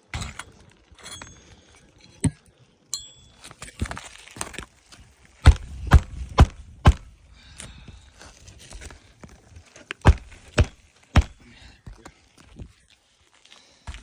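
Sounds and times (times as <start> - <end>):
metallic clink: 0.2 - 1.9, 2.9 - 3.9
hammer nailing shingles: 5.4 - 7.2, 10.0 - 11.4.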